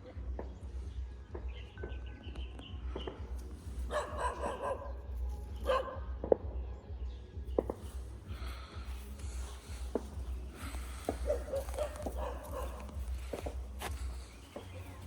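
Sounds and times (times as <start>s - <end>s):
dog barking: 3.8s - 6.2s, 11.0s - 13.6s.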